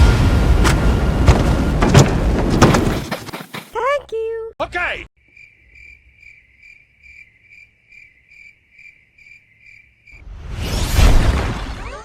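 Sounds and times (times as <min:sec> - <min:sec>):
cricket chirping: 0:05.2 - 0:10.3.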